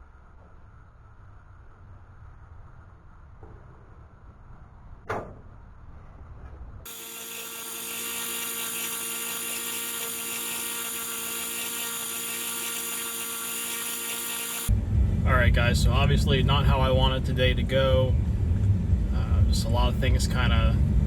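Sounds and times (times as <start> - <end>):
electric fuel pump whining: 6.9 - 14.7.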